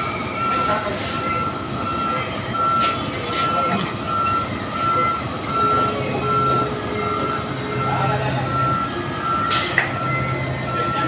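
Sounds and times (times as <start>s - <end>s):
reversing alarm beeping: 0.0s - 11.0s
engine humming: 1.4s - 11.0s.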